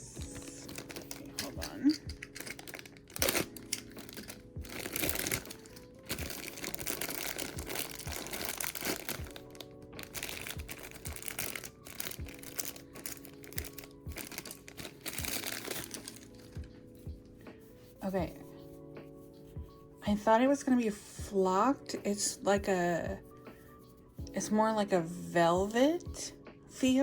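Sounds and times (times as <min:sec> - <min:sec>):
soft background music: 0:00.0 - 0:27.0
plastic packaging crinkling: 0:00.4 - 0:16.7.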